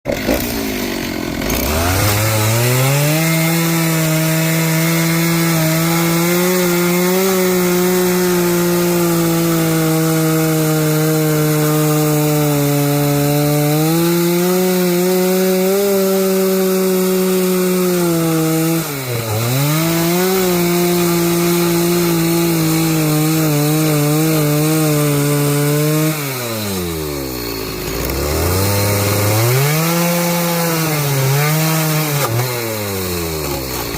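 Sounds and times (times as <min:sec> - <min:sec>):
chainsaw cutting wood: 0:00.1 - 0:33.9.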